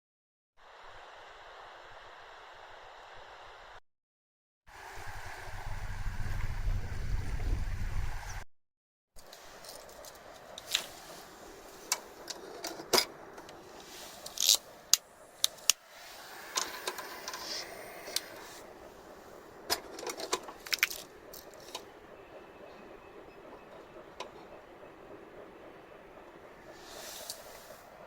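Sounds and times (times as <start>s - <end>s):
faint steady hiss: 9.2s - 28.0s.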